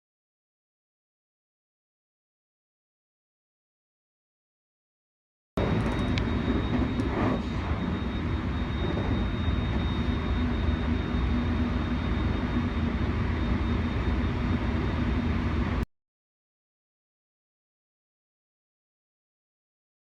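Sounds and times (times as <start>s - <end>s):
electric train rumble: 5.6s - 15.8s
thin high whine: 5.6s - 15.8s
low hum: 5.6s - 15.9s.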